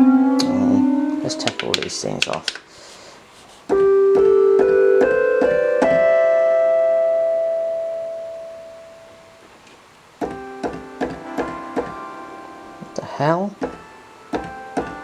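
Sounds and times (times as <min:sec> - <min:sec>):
synthesizer notes: 0:00.0 - 0:01.8, 0:10.2 - 0:15.0.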